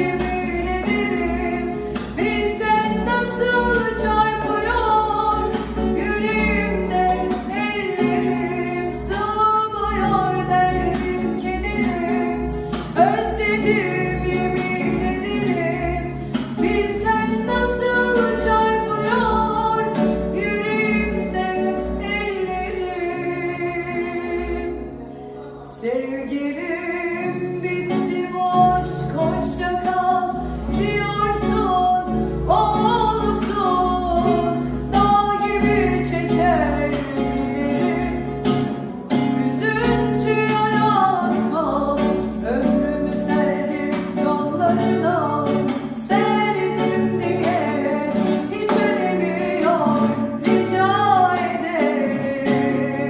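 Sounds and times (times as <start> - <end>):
person singing: 0.0 - 53.0.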